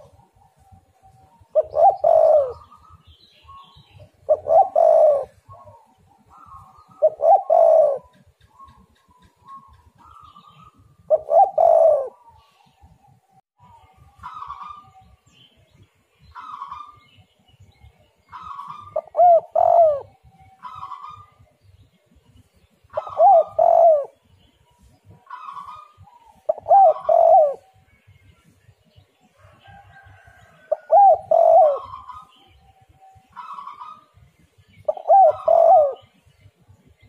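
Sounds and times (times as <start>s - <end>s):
dove cooing: 0.0s - 15.1s, 18.3s - 21.5s, 22.9s - 24.3s, 25.0s - 27.8s, 29.4s - 34.2s, 34.8s - 36.2s.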